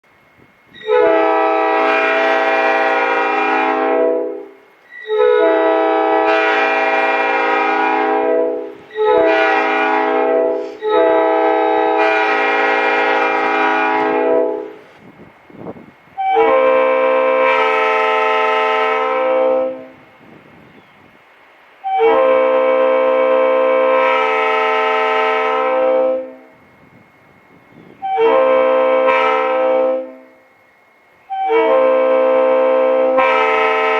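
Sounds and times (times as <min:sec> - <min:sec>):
locomotive air horn blasts: 0:00.7 - 0:20.4, 0:21.8 - 0:26.9, 0:27.7 - 0:30.6, 0:31.2 - 0:33.9.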